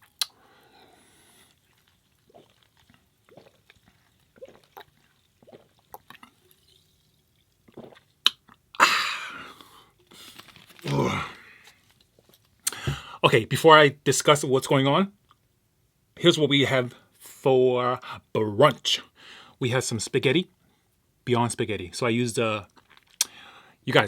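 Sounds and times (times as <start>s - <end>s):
person gulping liquid: 1.5s - 13.1s, 22.7s - 23.4s.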